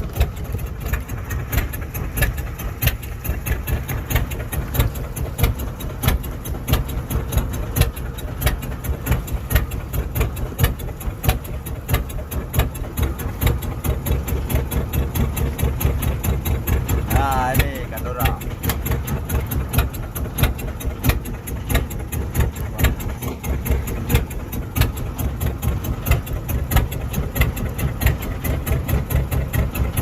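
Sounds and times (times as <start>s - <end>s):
boat engine knocking: 0.0s - 30.0s.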